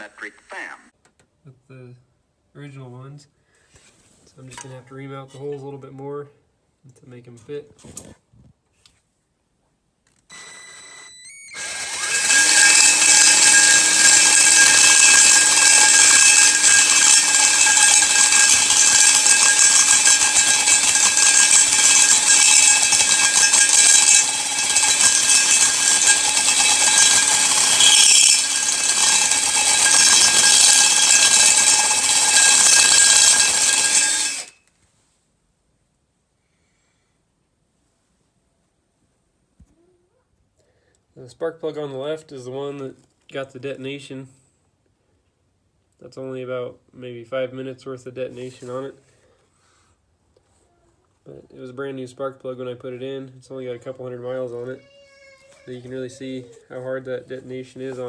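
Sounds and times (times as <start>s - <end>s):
electric drill whining: 10.3s - 34.6s.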